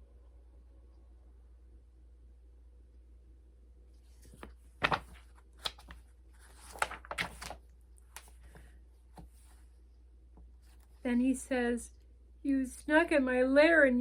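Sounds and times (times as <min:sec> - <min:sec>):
paper pages rustling: 0:04.0 - 0:09.7.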